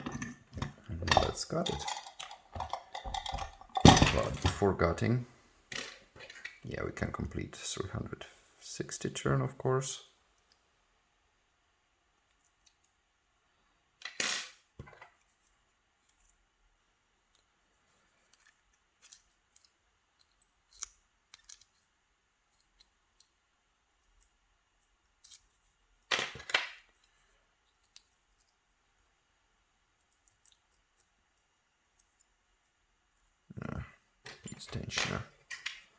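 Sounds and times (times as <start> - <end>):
lock rattling: 0.0 - 4.7.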